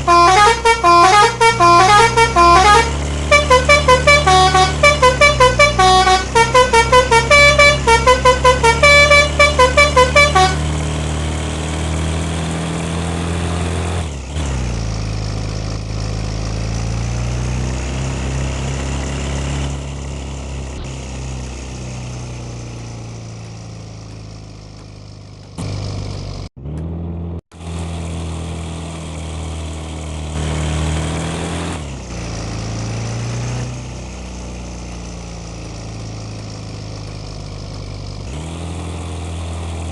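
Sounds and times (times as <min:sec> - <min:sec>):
bus horn melody: 0:00.0 - 0:10.8
bus engine running: 0:00.0 - 0:39.9.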